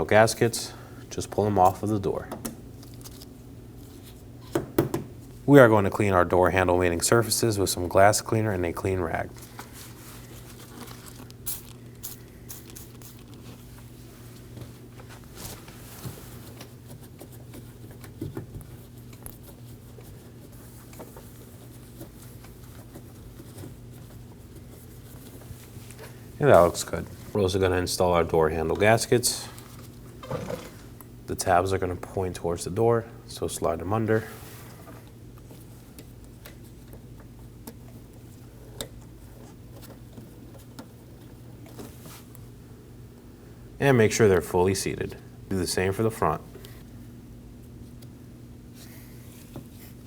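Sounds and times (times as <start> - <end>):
steady low hum: 0.0 - 50.0.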